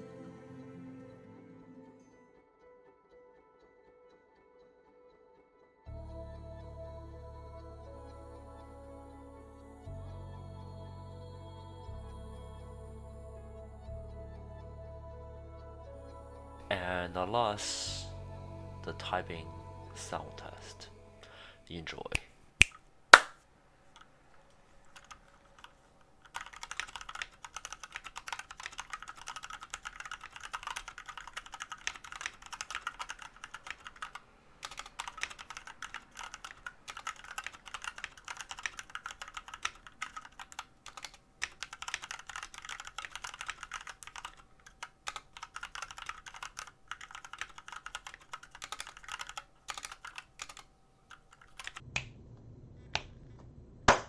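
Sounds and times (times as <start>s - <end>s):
mechanical keyboard typing: 24.9s - 51.8s.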